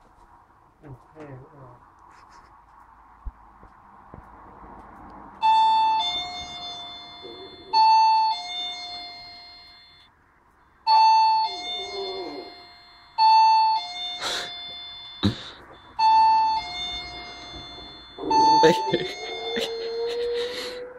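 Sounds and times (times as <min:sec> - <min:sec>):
doorbell chiming ding-dong: 0:05.4 - 0:10.1, 0:10.9 - 0:20.6.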